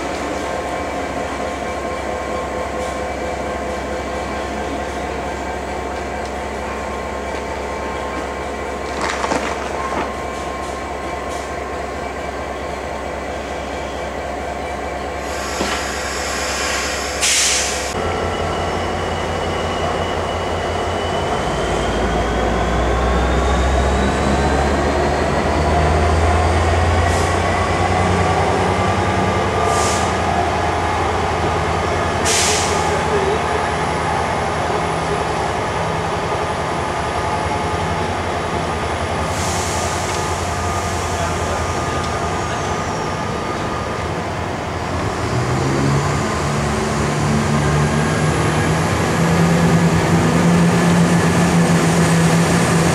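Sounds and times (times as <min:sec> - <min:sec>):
train rumbling: 0:00.0 - 0:52.9
steam hissing: 0:15.2 - 0:18.0, 0:32.2 - 0:32.9.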